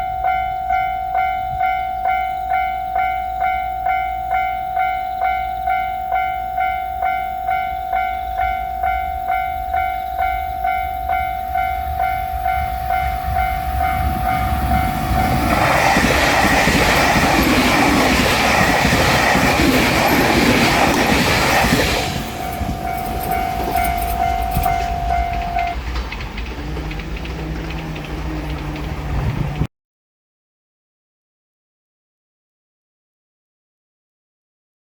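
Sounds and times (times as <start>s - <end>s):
level crossing bell clanging: 0.0s - 25.8s
electric train rushing past: 0.0s - 29.7s
rail clatter: 8.0s - 29.7s.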